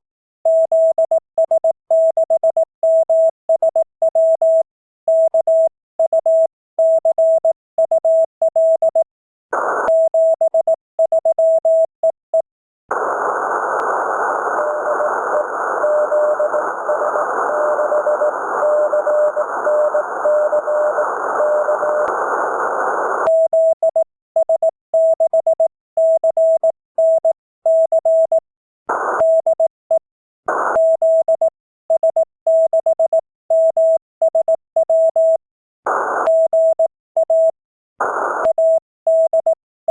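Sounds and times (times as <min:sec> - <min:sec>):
radio receiver hiss: 0:12.9 - 0:23.3
faint morse signal: 0:13.0 - 0:23.8
morse code tone: 0:14.4 - 0:22.1, 0:38.4 - 0:39.9.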